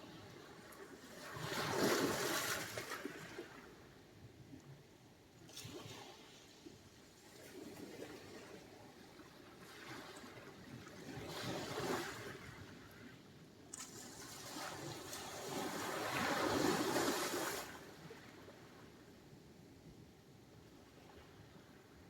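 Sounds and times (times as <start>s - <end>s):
waves washing onto shore: 13.7s - 18.9s.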